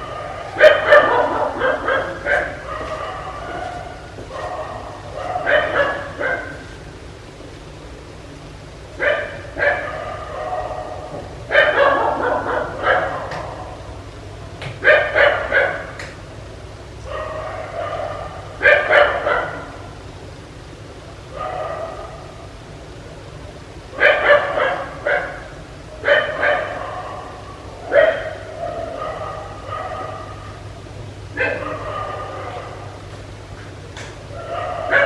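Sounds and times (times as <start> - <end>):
dog barking: 0.0 - 6.8, 9.0 - 13.9, 14.8 - 16.2, 17.0 - 20.0, 21.3 - 22.5, 23.9 - 30.7, 31.3 - 33.0, 34.3 - 35.0
steady low hum: 0.0 - 35.0.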